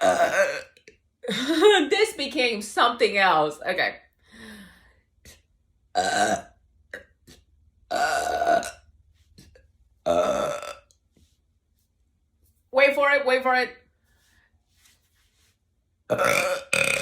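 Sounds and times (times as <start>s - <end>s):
woman belching: 0.0s - 1.4s, 5.9s - 7.2s, 7.9s - 8.9s, 10.0s - 10.9s, 16.1s - 17.0s.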